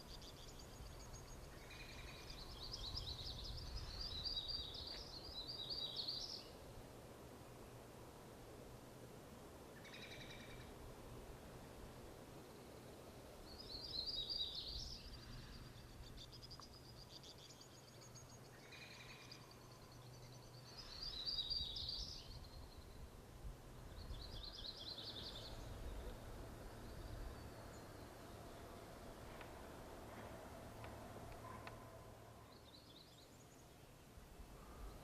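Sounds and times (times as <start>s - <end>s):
songbirds trilling: 0.0s - 6.6s, 9.8s - 10.7s, 13.4s - 23.1s, 23.8s - 35.0s
faint outdoor background noise: 0.0s - 35.0s.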